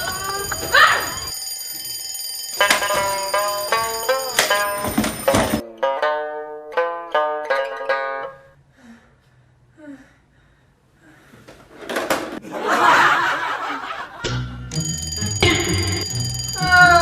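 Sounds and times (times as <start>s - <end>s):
alarm ringtone plucked melody: 0.2s - 5.6s, 14.6s - 17.0s.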